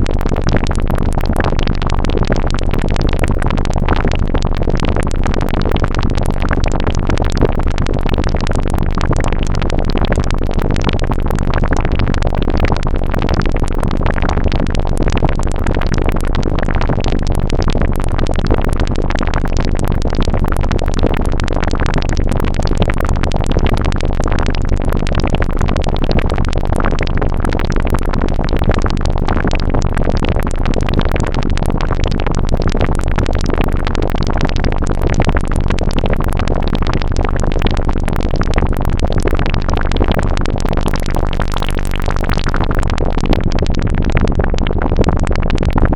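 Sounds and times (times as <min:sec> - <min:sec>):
constant low rumble: 0:00.0 - 0:08.2
synthesized blips and clicks: 0:37.6 - 0:45.9.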